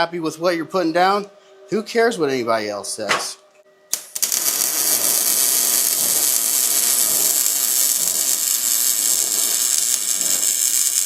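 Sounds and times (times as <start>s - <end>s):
welding arc sizzling: 3.9s - 11.0s.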